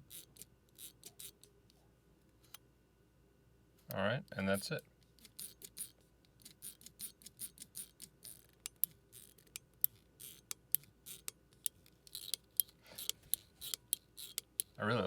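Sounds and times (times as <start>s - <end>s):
fidget slider clicking: 0.0s - 1.5s, 5.2s - 14.8s.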